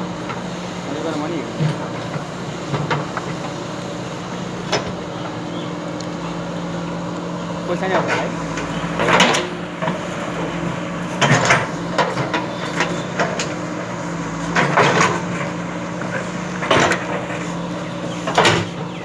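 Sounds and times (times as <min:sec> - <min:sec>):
diesel engine running: 0:00.0 - 0:19.0
machine knocks and scrapes: 0:07.8 - 0:17.6.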